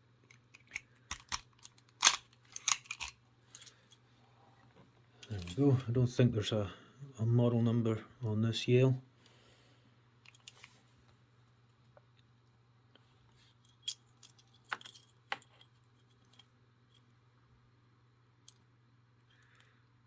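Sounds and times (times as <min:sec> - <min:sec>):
faint low hum: 0:00.0 - 0:20.0
padlock metal clicks: 0:00.3 - 0:03.2
lock picks jingling: 0:00.3 - 0:03.9.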